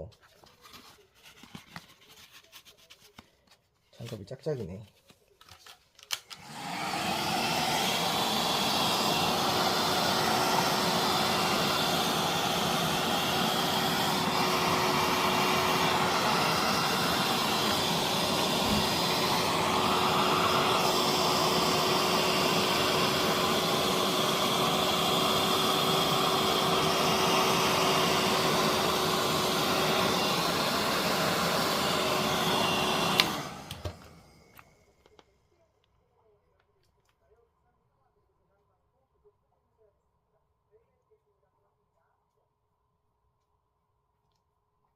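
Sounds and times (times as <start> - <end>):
hair dryer blowing with whine: 6.3 - 34.9.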